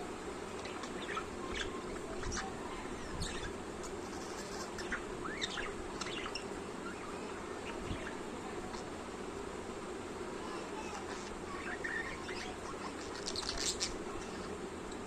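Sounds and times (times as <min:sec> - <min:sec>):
budgerigar chirping and warbling: 0:00.6 - 0:03.5, 0:04.2 - 0:08.2.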